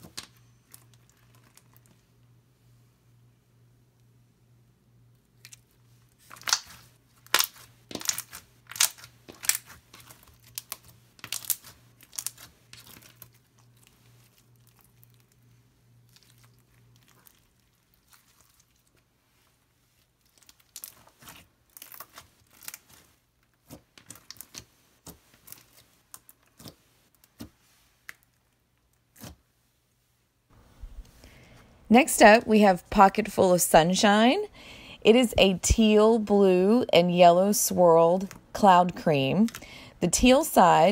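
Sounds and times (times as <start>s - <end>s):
faint steady hum: 0.0s - 40.9s
crunchy slime crackles: 5.4s - 27.4s.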